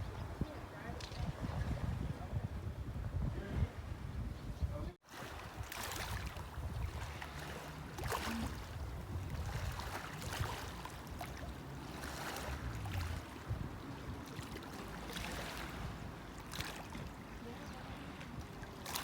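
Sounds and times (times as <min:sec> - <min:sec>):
wind buffeting microphone: 0:00.0 - 0:18.9
small waves washing on sand: 0:05.0 - 0:19.0.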